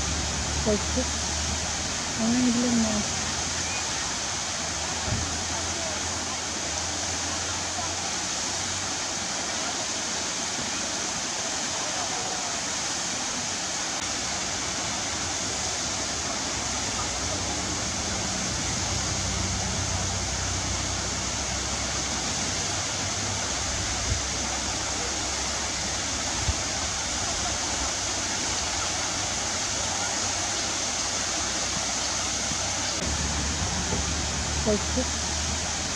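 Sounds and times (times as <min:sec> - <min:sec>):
waterfall rushing: 0:00.0 - 0:35.9
deep rumble: 0:33.0 - 0:35.9.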